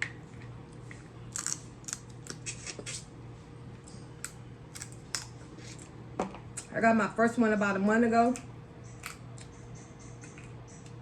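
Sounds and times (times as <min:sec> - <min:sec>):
faint steady hum: 0:00.0 - 0:11.0
crisp clicks and crackles: 0:00.4 - 0:03.0.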